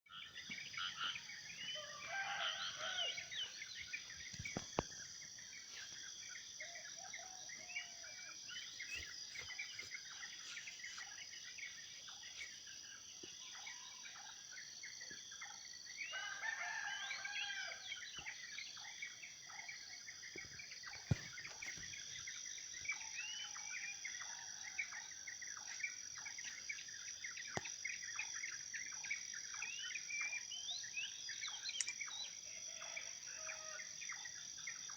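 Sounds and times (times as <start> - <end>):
birds chirping and calling: 0.1 - 5.9.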